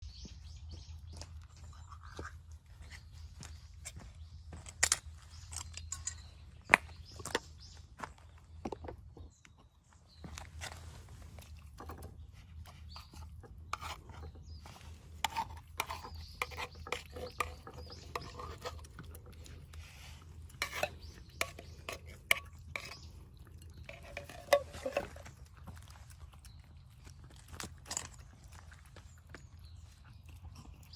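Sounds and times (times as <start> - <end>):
metal utensil scraping tin: 12.7 - 25.4.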